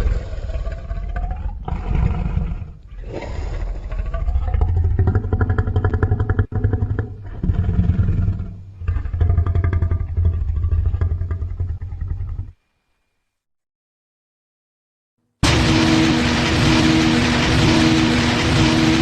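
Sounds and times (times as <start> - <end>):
deep monster growl: 0.0 - 12.4.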